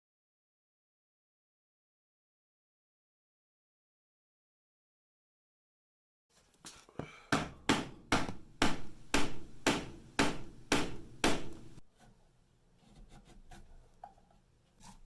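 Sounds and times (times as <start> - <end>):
hammer blows on wood: 7.0 - 11.8.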